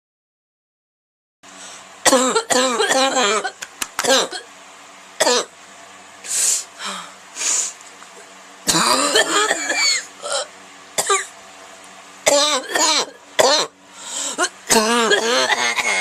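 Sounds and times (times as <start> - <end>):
noisy breaths: 1.5 - 2.0, 6.2 - 7.9, 13.8 - 14.5
person barking cough: 2.1 - 4.4, 5.2 - 5.5, 8.7 - 10.4, 12.3 - 13.7, 14.3 - 16.0.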